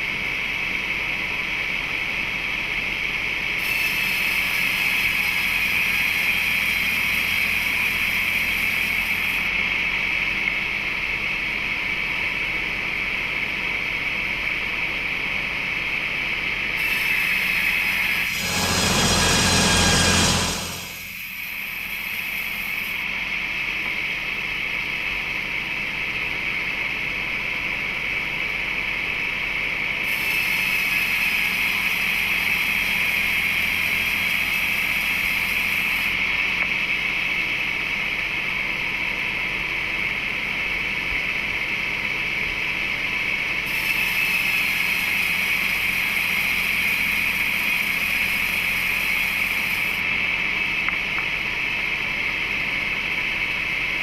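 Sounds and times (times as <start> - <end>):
saw high whine: 16.7 - 22.2
blade hissing through wood: 16.8 - 21.2.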